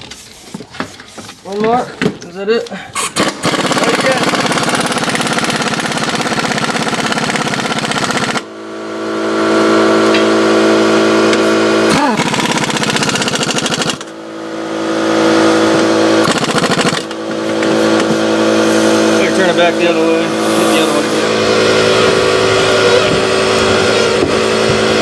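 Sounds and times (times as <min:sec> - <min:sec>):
impact wrench rattling: 0:03.0 - 0:08.4, 0:12.2 - 0:14.2, 0:15.7 - 0:19.3.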